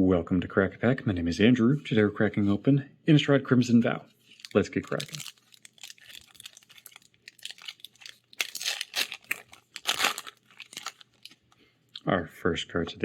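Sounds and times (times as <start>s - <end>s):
foil wrapper tearing and crinkling: 4.3s - 11.5s.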